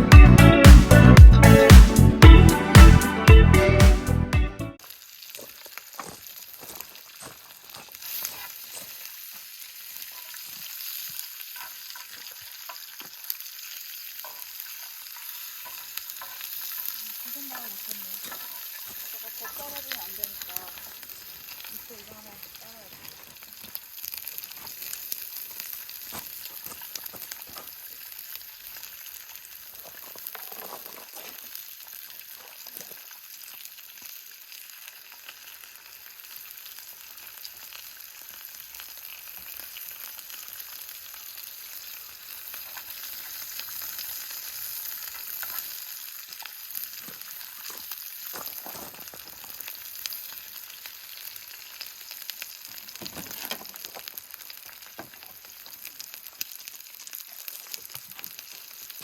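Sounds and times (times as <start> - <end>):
food sizzling in a pan: 4.8 - 59.0.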